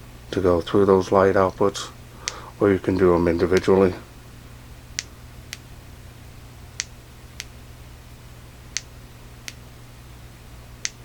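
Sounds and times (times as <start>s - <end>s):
flashlight switch clicking: 2.2s - 2.4s.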